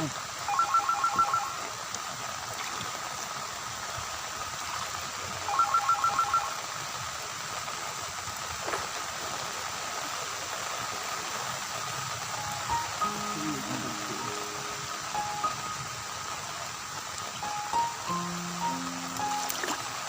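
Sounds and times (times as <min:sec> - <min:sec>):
electronic ringtone beeps: 0:00.5 - 0:01.6, 0:05.5 - 0:06.6
steady hiss: 0:06.7 - 0:20.0.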